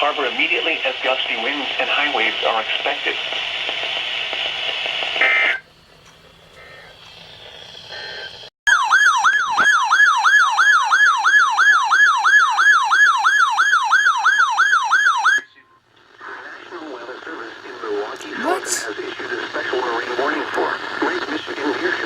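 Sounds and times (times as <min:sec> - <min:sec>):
weather radio audio: 0:00.0 - 0:03.4, 0:16.3 - 0:22.0.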